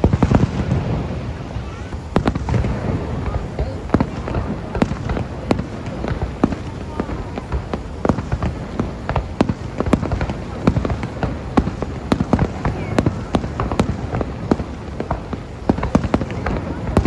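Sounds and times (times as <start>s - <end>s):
fireworks popping and crackling: 0.0s - 17.0s.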